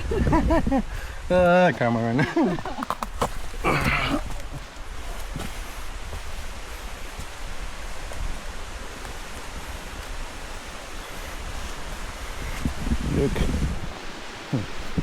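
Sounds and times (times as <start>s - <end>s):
wind rumble on microphone: 0.0s - 15.0s.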